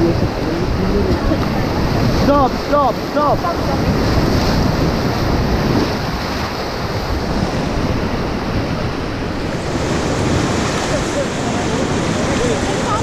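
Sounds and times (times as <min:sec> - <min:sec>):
whitewater rushing: 0:00.0 - 0:13.0
wind buffeting the microphone: 0:00.0 - 0:13.0.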